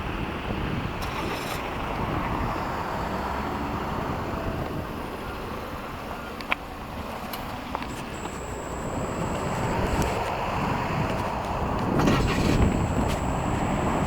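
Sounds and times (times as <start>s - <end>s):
sharp click: 7.8s - 10.3s, 11.1s - 14.0s
road traffic rushing: 7.9s - 14.0s.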